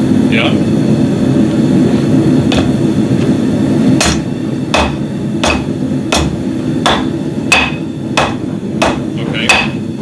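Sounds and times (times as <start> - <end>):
hammer striking metal on anvil: 4.0 - 9.9.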